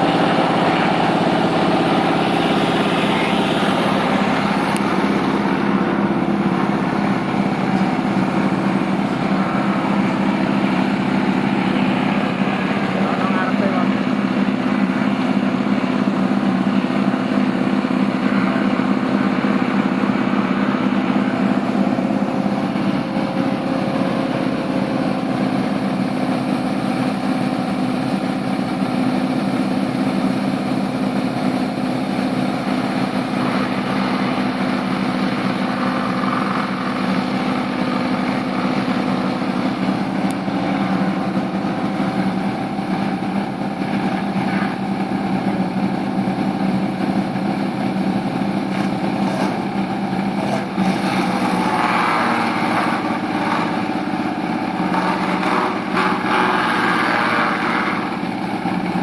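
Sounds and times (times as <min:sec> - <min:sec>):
wood crusher engine running: 0:00.0 - 0:59.0.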